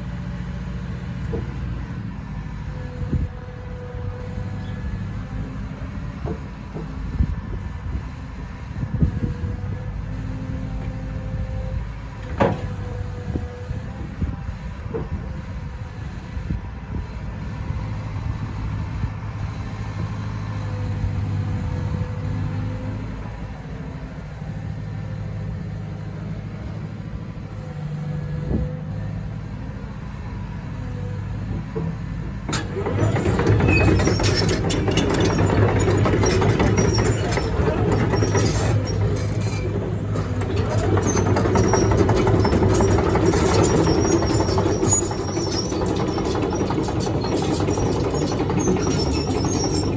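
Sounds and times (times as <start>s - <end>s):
excavator diesel engine running: 0.0s - 49.9s
metallic clicks and clanks: 32.5s - 49.9s.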